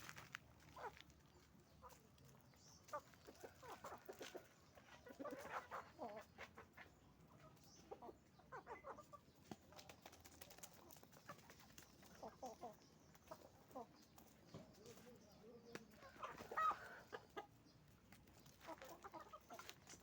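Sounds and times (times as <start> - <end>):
chickens clucking: 0.1 - 20.0.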